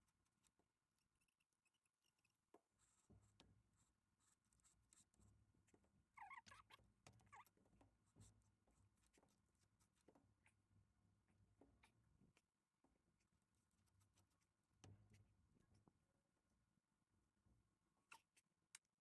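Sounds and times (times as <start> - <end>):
faint squeak: 6.1 - 8.4.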